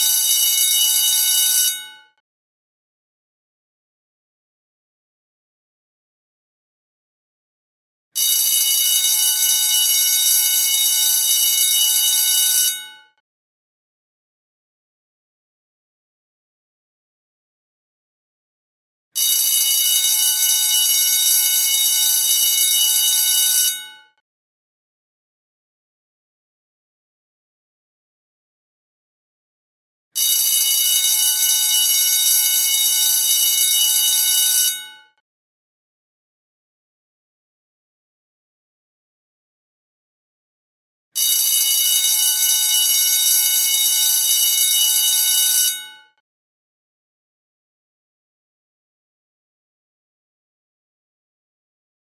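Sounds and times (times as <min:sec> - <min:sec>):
school bell ringing: 0:00.0 - 0:02.0, 0:08.5 - 0:13.0, 0:19.4 - 0:24.0, 0:30.2 - 0:35.0, 0:41.4 - 0:46.0.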